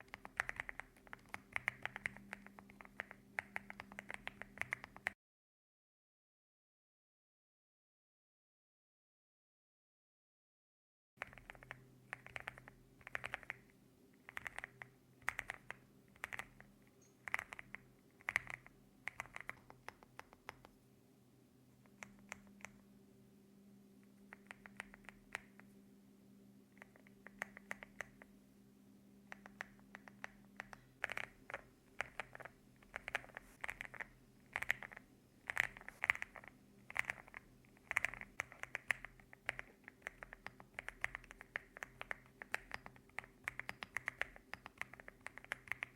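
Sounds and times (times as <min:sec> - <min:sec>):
mechanical keyboard typing: 0:00.0 - 0:05.2, 0:11.2 - 0:20.7, 0:24.3 - 0:25.6, 0:26.8 - 0:28.3, 0:29.3 - 0:45.9.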